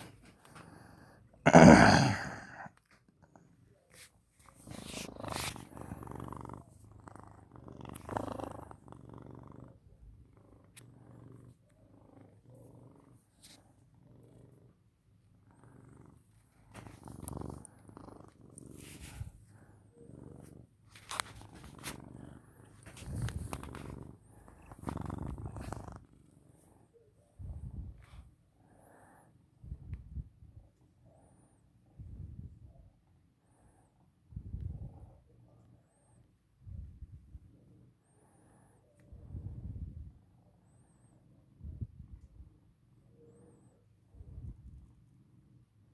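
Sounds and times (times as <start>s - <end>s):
cat purring: 0.0s - 45.9s
faint rustles: 2.9s - 8.8s, 15.6s - 28.4s.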